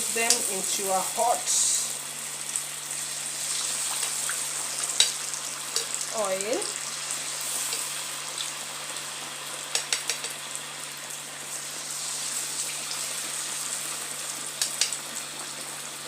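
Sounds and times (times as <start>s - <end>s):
potato slices frying in oil: 0.0s - 16.0s
sharp clicks: 9.7s - 10.4s, 14.6s - 15.0s.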